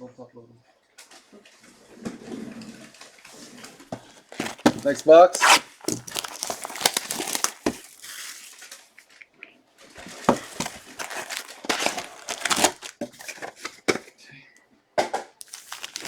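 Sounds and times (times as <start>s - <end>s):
plastic wrapping crinkling: 3.7s - 13.8s, 15.4s - 16.0s.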